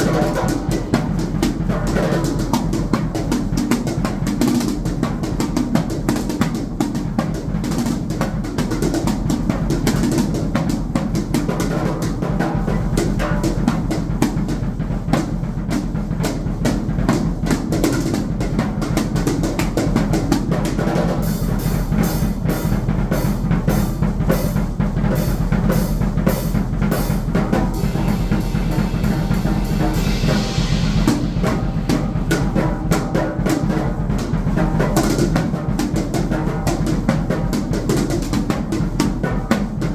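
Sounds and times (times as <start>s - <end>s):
snare and bass drum hits: 0.0s - 39.9s
cymbal hits: 21.2s - 35.4s.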